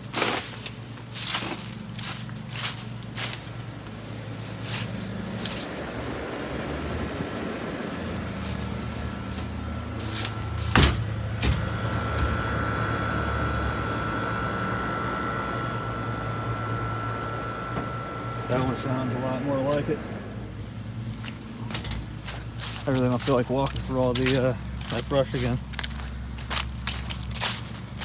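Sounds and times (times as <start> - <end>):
air conditioner humming: 3.5 - 25.2
high whine: 7.8 - 20.6
loud knocks: 9.9 - 12.7.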